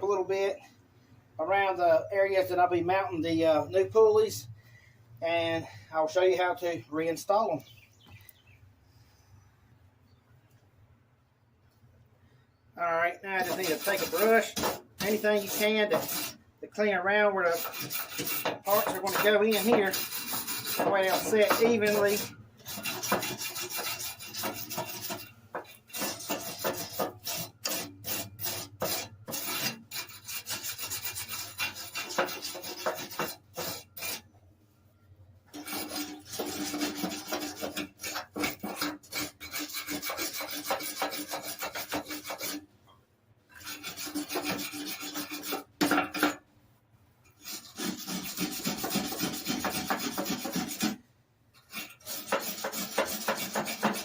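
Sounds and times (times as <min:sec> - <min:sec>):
hand brush scrubbing metal deck: 0:13.1 - 0:34.3, 0:35.5 - 0:42.7, 0:43.5 - 0:46.0, 0:47.3 - 0:51.0, 0:51.6 - 0:54.0.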